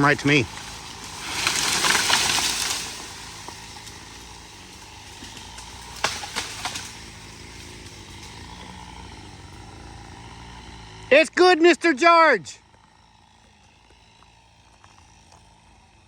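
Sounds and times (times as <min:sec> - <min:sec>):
tree crashing through branches: 0:00.0 - 0:11.1
engine idling: 0:00.0 - 0:16.0.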